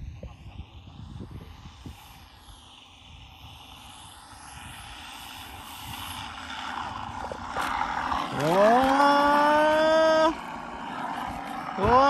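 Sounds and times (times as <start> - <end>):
droning engine tone: 0.0 - 12.0
propeller rushing noise: 0.3 - 12.0.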